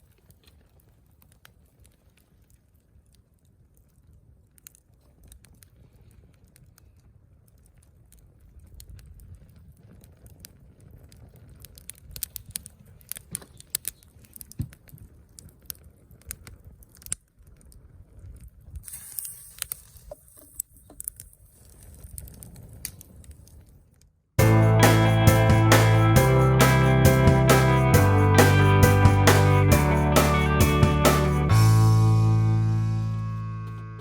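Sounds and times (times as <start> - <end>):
brief hiss: 18.8 - 22.2
music: 24.4 - 34.0.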